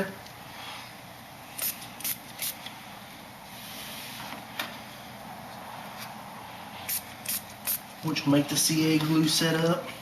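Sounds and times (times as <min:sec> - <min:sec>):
spray bottle hissing squirts: 0:01.6 - 0:02.6, 0:06.8 - 0:07.9.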